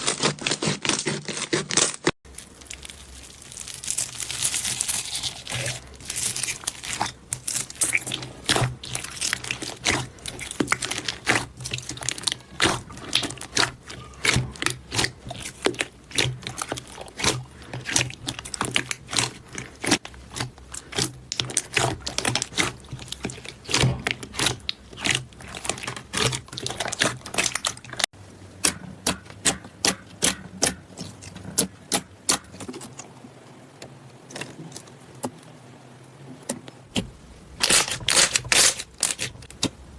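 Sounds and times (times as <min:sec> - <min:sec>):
slime crackling and popping: 0:00.1 - 0:28.1, 0:37.6 - 0:39.7.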